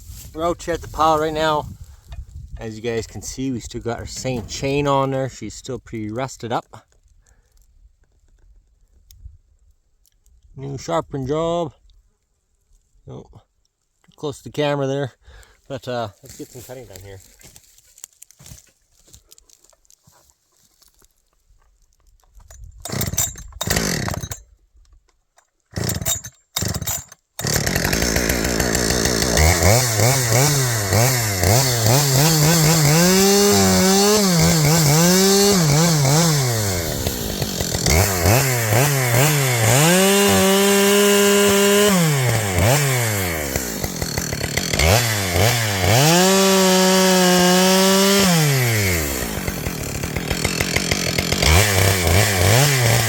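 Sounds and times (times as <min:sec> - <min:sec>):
two-stroke chainsaw revving: 0:22.9 - 0:24.4, 0:25.7 - 0:53.0.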